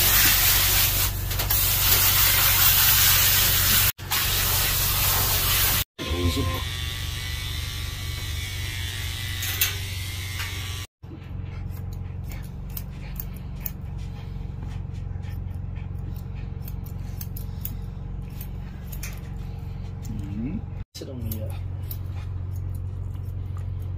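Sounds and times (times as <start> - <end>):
electric clippers buzzing: 5.5 - 10.9
steady low hum: 10.6 - 23.9
scissors snipping: 11.6 - 13.9, 15.3 - 19.4, 21.1 - 23.9.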